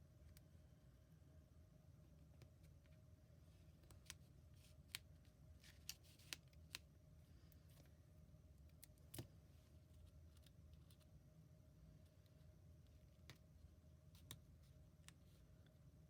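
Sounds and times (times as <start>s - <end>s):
low steady hum: 0.0s - 16.0s
faint clicks of paper handled: 3.7s - 8.0s.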